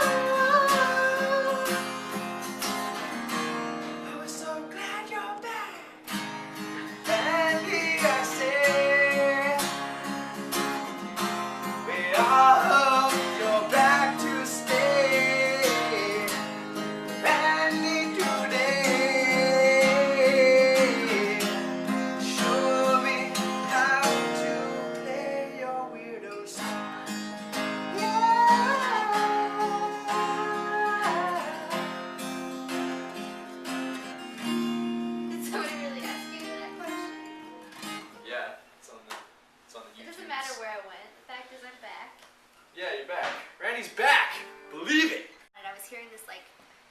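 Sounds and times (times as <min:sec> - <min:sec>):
person singing: 0:00.0 - 0:02.0, 0:07.1 - 0:09.8, 0:11.9 - 0:16.6, 0:17.2 - 0:26.7, 0:27.9 - 0:31.9
acoustic guitar strumming chords: 0:00.0 - 0:38.3.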